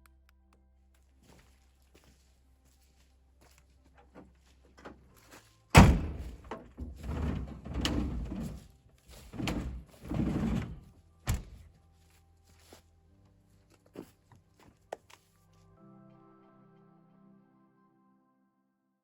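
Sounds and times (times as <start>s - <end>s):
scraping and rustling: 5.2s - 11.0s
heavy thunk: 5.8s - 8.6s.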